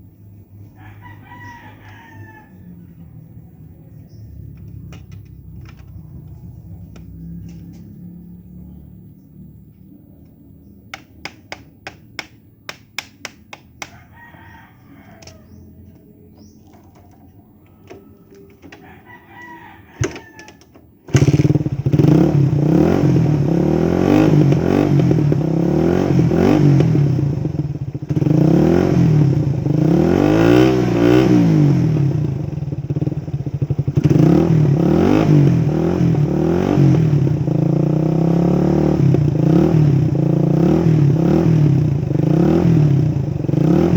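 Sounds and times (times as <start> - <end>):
rooster crowing: 0.6 - 3.2, 13.8 - 20.8
motorcycle engine revving: 4.0 - 11.6, 19.4 - 43.9
sharp clicks: 9.8 - 14.0.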